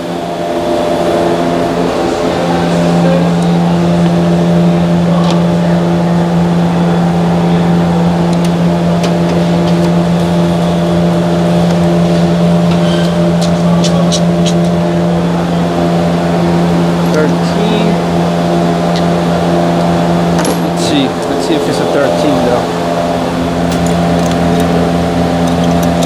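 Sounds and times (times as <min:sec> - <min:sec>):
low motor hum: 0:00.0 - 0:26.0.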